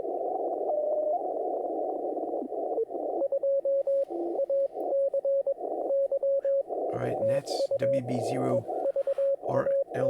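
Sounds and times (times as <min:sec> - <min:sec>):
morse code signals: 0:03.3 - 0:10.0
radio band noise hissing: 0:06.4 - 0:10.0.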